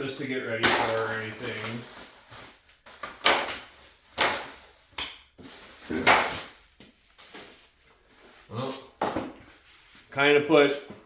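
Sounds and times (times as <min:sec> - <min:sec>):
packaging rustling and tearing: 0:00.0 - 0:07.8.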